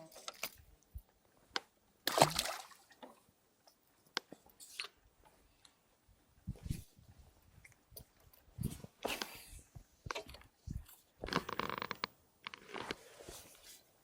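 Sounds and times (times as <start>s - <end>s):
water splash: 2.1s - 2.8s.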